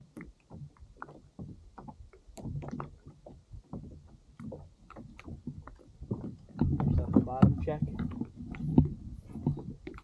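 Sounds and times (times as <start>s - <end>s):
water lapping against hull: 0.0s - 10.0s.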